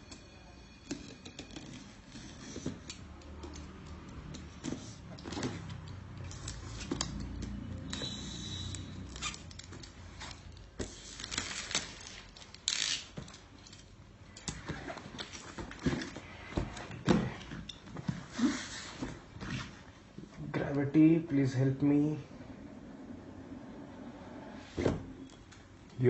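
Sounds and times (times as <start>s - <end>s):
cardboard and plastic packaging handled: 9.1s - 13.7s.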